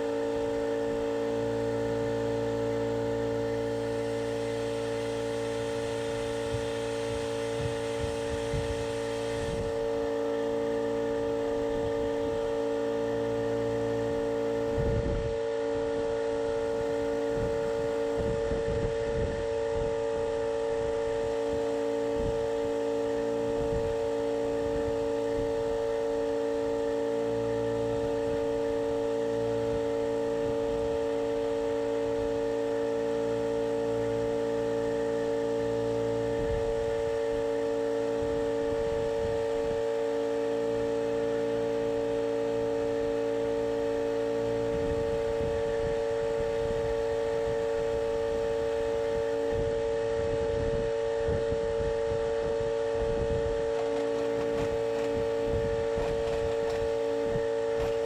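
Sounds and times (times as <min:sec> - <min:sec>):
steady mechanical hum: 0:00.0 - 0:58.0.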